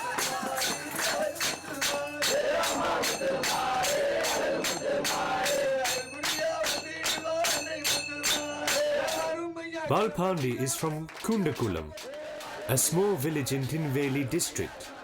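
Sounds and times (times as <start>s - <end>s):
jingling percussion beat: 0.0s - 9.4s
person chanting: 0.0s - 15.0s.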